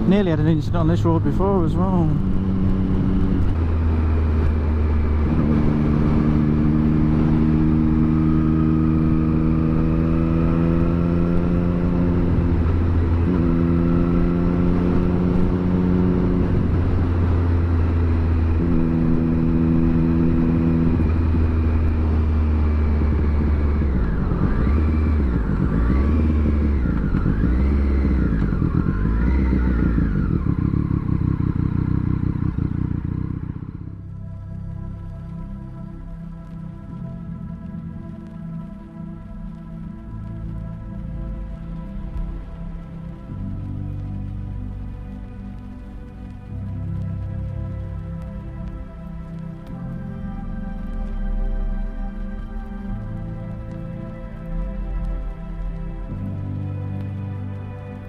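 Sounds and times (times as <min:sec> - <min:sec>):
motorcycle engine running: 0:00.0 - 0:35.2.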